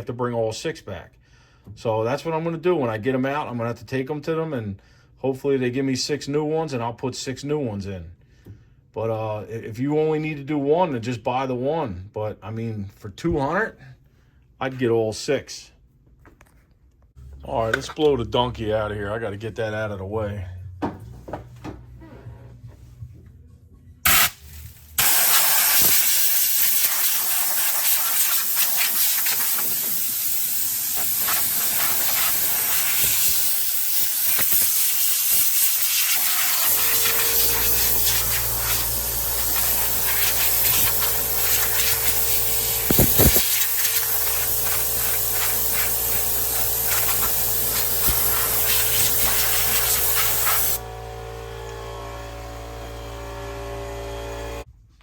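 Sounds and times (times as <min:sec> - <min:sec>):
air blowgun hissing: 0:24.1 - 0:50.8.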